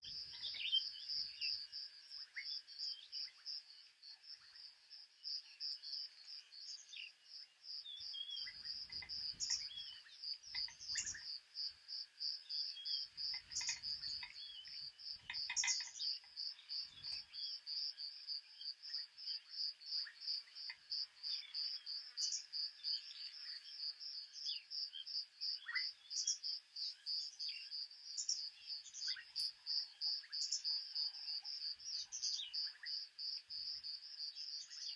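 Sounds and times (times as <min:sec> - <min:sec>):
cricket chirping: 0:00.0 - 0:34.9
faint bird calls: 0:08.0 - 0:11.4, 0:12.3 - 0:18.2.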